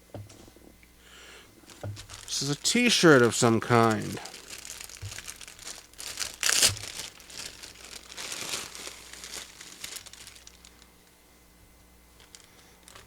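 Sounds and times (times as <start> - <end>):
packaging crinkling and rustling: 1.6 - 11.1, 12.1 - 13.0.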